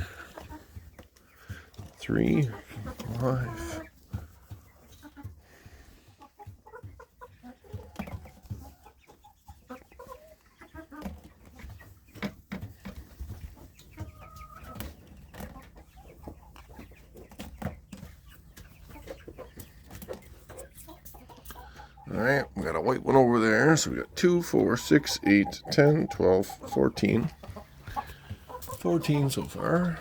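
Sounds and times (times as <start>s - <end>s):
chickens clucking: 0.0s - 30.0s
small knocks and rustles: 3.8s - 21.5s.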